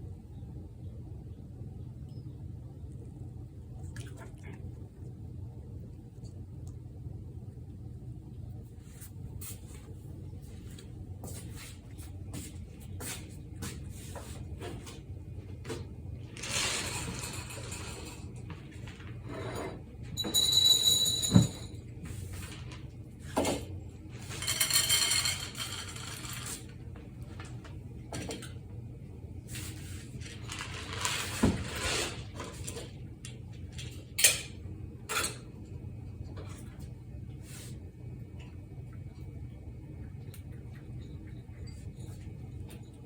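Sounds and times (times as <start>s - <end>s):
scraping and rattling: 16.3s - 19.8s, 24.2s - 26.7s, 29.6s - 32.9s.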